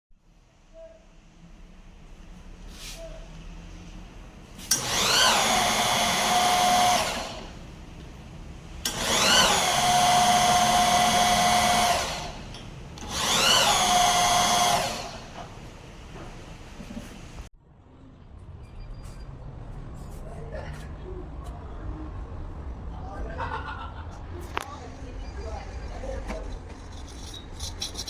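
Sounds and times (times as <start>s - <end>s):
power tool motor whining: 4.7s - 7.6s, 8.8s - 15.6s.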